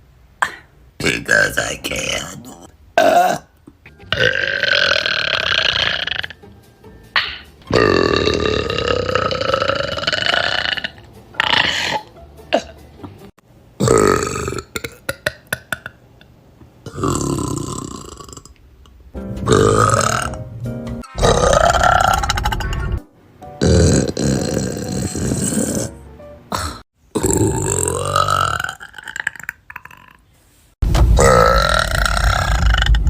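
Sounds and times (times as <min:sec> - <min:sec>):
women belching: 0:03.0 - 0:06.4, 0:07.7 - 0:12.8, 0:13.8 - 0:15.9, 0:19.5 - 0:20.4, 0:23.6 - 0:25.9, 0:26.5 - 0:30.2.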